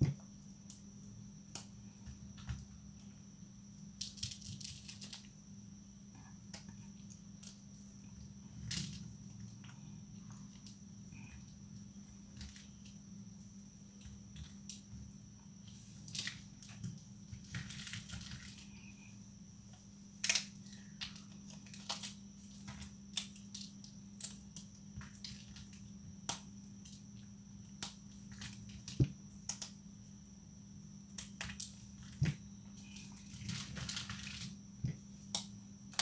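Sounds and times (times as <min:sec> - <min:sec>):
crumbly crunch: 0:04.0 - 0:05.4, 0:16.0 - 0:18.9, 0:20.1 - 0:27.2, 0:31.1 - 0:36.0
dried soap snapping: 0:04.0 - 0:05.4, 0:20.2 - 0:29.9, 0:31.1 - 0:36.0.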